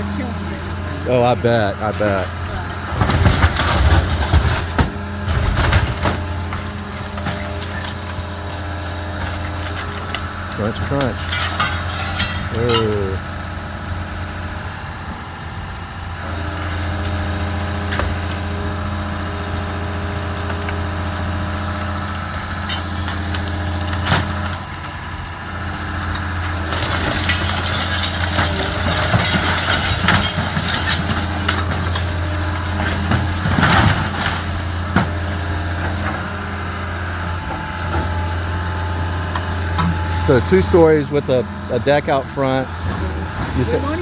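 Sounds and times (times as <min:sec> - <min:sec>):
heavy machine engine running: 0:00.0 - 0:44.0
debris crashing: 0:01.0 - 0:13.2, 0:25.9 - 0:44.0.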